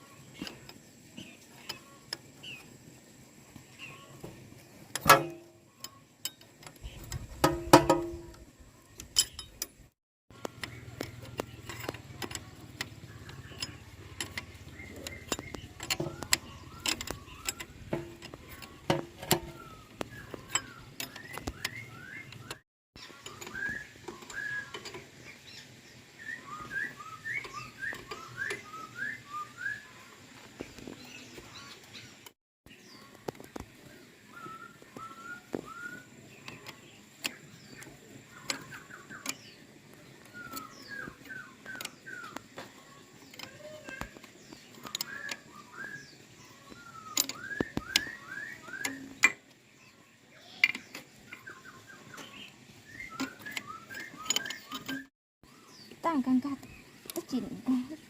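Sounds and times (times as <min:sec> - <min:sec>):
small birds chirping: 0:00.0 - 0:58.0
loud ringing metal clanks: 0:05.0 - 0:05.6, 0:07.4 - 0:08.4
tools clinking on metal: 0:05.0 - 0:08.4, 0:09.0 - 0:09.8, 0:10.6 - 0:19.6, 0:53.2 - 0:55.1.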